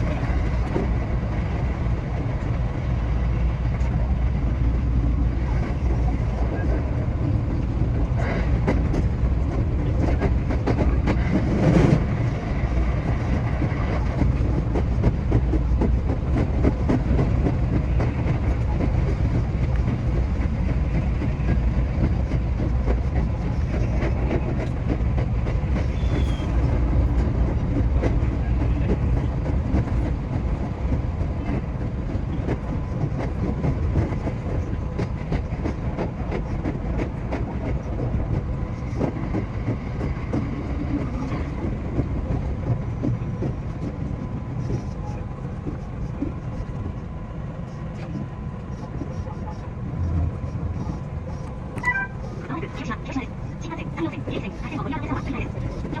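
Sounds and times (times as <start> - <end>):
train rumbling on rails: 0.0 - 56.0.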